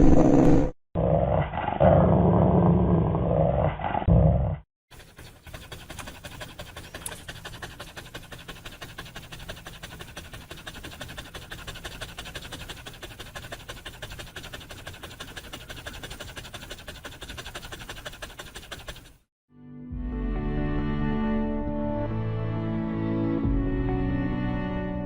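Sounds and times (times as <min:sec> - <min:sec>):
dog panting: 0:04.9 - 0:19.3.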